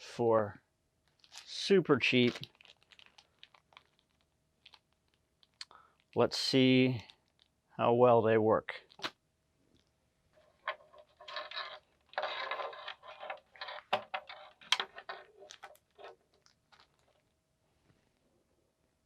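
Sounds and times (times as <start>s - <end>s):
packaging rustling and scraping: 1.1s - 5.6s, 10.4s - 17.3s.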